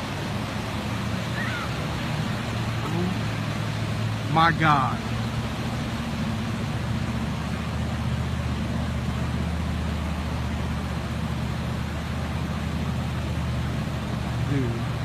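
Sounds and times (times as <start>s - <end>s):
vehicle engine running: 0.0s - 15.0s.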